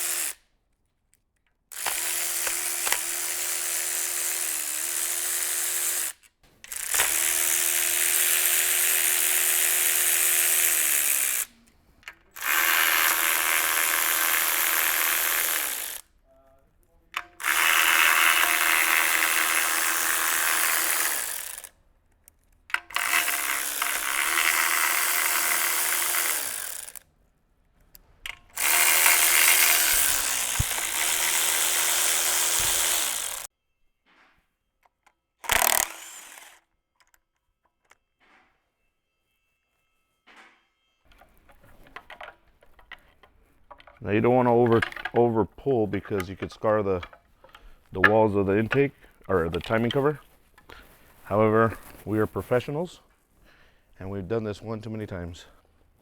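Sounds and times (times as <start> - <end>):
power tool whining: 0.0 - 0.4, 1.7 - 11.7, 12.3 - 16.1, 17.2 - 21.7, 22.7 - 27.0, 28.3 - 33.5, 35.4 - 36.7.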